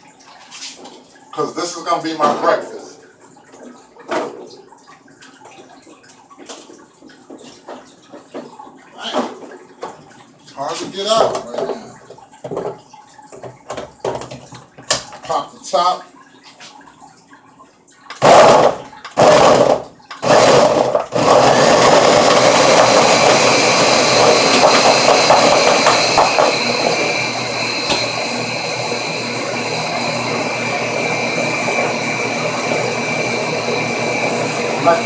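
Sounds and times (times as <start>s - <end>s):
blender running: 18.2s - 35.0s.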